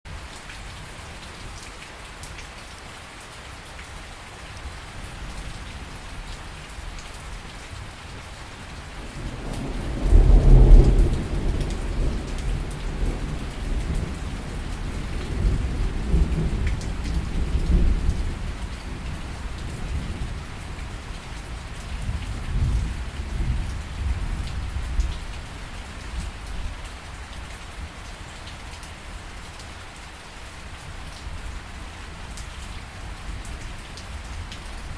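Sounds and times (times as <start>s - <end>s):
steady rain: 0.1s - 34.9s
thunder rumbling: 9.1s - 18.5s.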